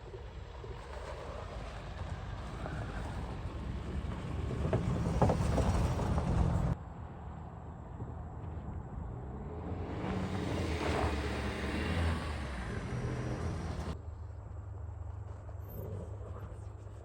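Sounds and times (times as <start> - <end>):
vehicle rushing by: 8.8 - 14.0.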